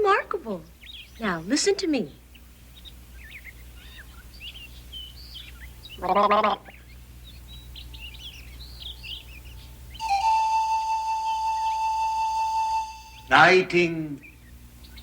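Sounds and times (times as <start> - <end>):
songbird chirping faintly: 0.0 - 15.0
loud held whistled note: 10.0 - 13.8.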